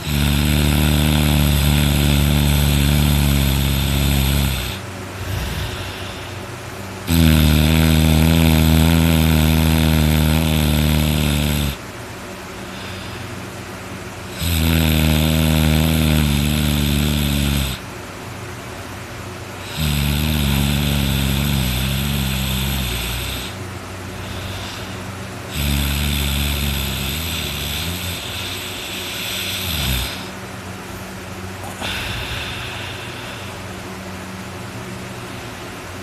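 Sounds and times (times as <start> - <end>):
person snoring loudly: 0.0 - 6.4, 7.0 - 11.8, 12.6 - 13.3, 14.3 - 17.8, 19.6 - 23.6, 24.2 - 30.4, 31.6 - 33.6.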